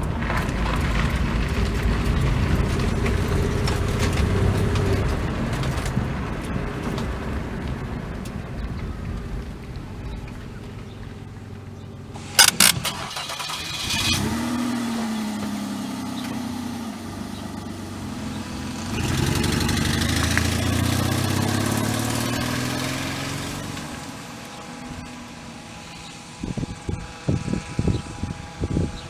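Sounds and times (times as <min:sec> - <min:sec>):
car engine revving: 0:00.0 - 0:29.0
sharp clicks: 0:12.2 - 0:14.3.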